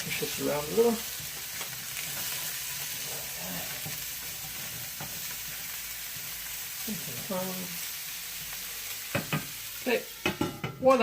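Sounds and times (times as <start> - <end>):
onion sizzling in a skillet: 0.0 - 11.0.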